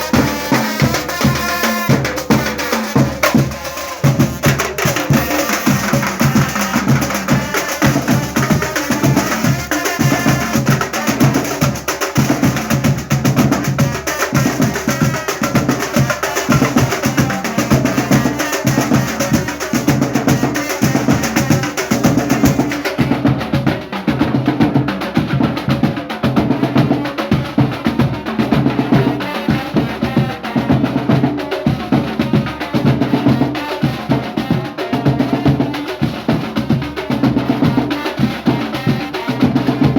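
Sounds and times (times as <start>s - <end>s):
percussion-heavy music: 0.0s - 39.9s.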